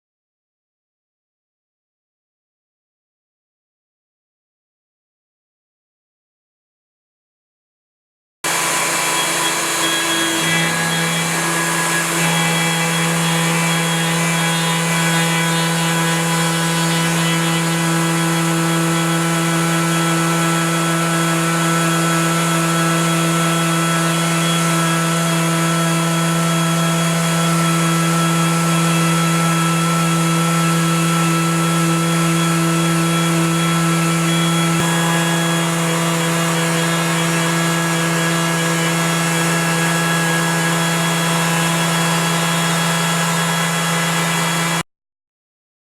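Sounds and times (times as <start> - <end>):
router motor whine: 8.5 - 44.8.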